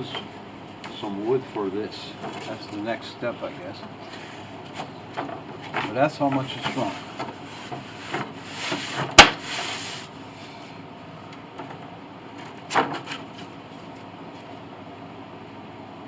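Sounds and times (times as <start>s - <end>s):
wooden boards scraping: 4.1s - 10.1s, 11.6s - 13.5s.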